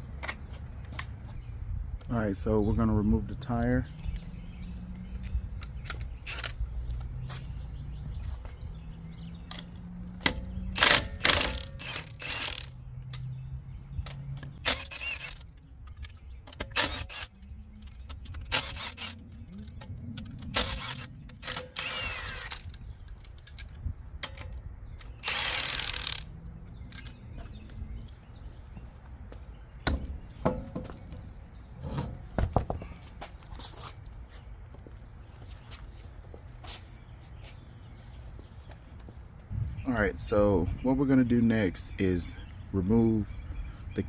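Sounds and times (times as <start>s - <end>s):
nuts and tools clinking: 9.4s - 27.7s
impact wrench bursts: 10.7s - 12.8s, 14.6s - 15.4s, 20.5s - 22.8s, 25.1s - 26.3s.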